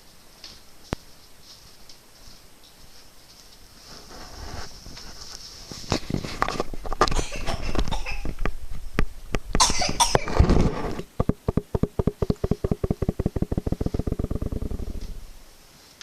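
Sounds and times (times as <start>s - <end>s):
harsh coughs: 9.6s - 10.5s
rapid short pulses: 10.0s - 15.5s.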